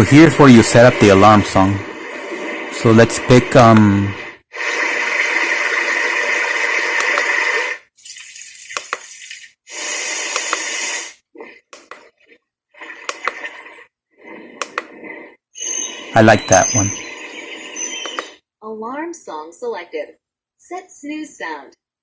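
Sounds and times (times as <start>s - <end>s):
alarm clock hiss-like sounds: 0.0s - 7.8s, 9.7s - 11.2s, 14.6s - 18.4s.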